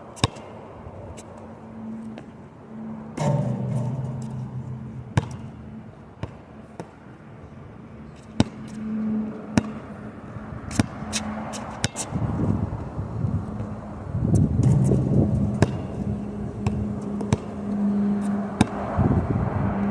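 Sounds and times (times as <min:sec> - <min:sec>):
steady low hum: 0:00.6 - 0:19.9
basketball bouncing on hard court: 0:03.2 - 0:05.5, 0:08.4 - 0:08.6, 0:14.6 - 0:15.9, 0:16.6 - 0:17.5
wind noise: 0:10.2 - 0:19.9.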